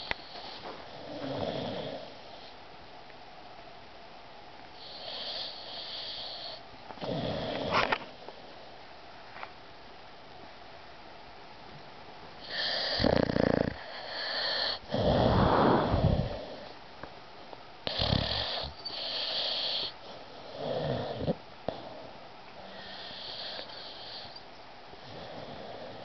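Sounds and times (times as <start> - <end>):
dog snoring: 0.0 - 2.5, 4.8 - 8.0, 12.4 - 16.8, 17.8 - 22.0, 22.6 - 24.4, 25.0 - 26.0.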